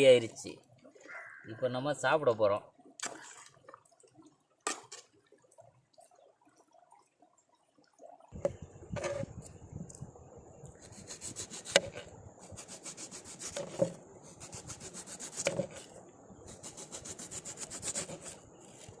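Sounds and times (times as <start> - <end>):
ladle scraping cooking pot: 8.9 - 9.4.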